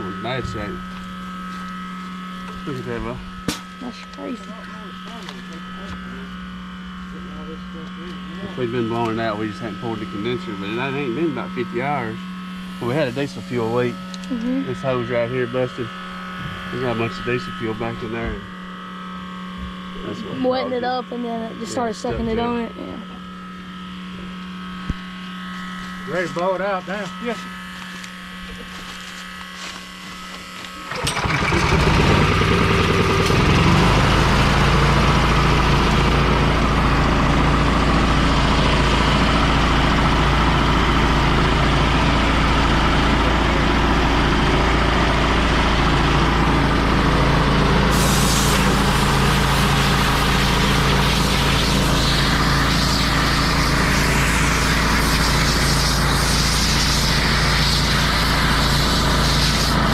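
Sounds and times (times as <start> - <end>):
machine engine running: 0.0 - 59.9
loud rush of air: 47.7 - 59.9.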